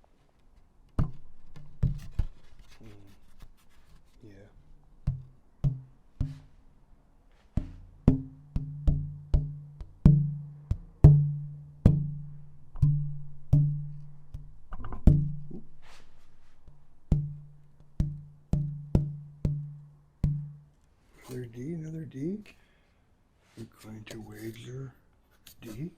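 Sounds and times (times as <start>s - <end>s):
wood pieces knocked with low ringing: 5.0s - 6.5s, 7.6s - 20.8s.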